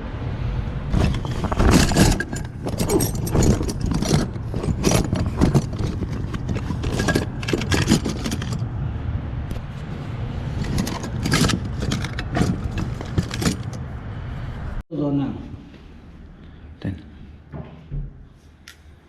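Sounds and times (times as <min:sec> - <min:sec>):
metal tools clattering: 0:00.9 - 0:08.6, 0:10.6 - 0:13.8.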